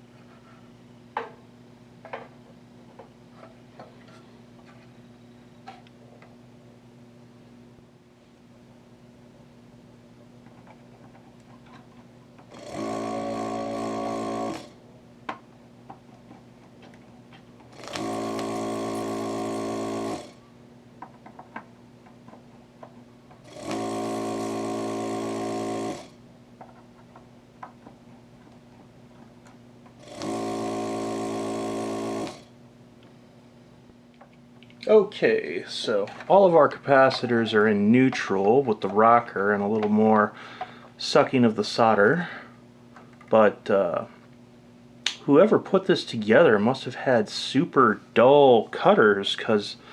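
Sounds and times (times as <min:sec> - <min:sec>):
vacuum pump humming: 0:10.3 - 0:43.4.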